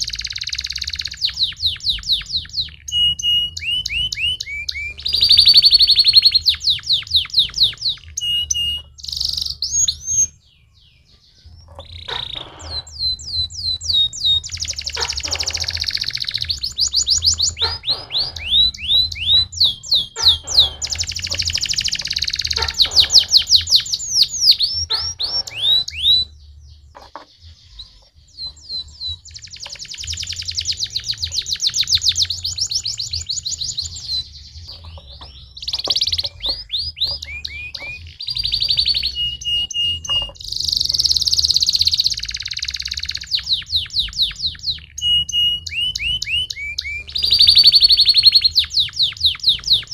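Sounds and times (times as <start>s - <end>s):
canary singing: 0.0s - 49.9s.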